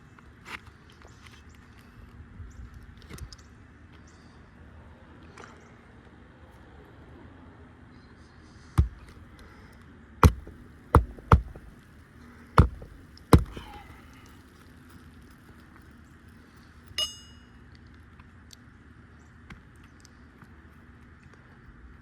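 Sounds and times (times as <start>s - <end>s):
hammer striking nails: 8.8s - 9.2s, 10.2s - 11.8s, 12.6s - 13.8s
short metallic ring: 17.0s - 17.6s.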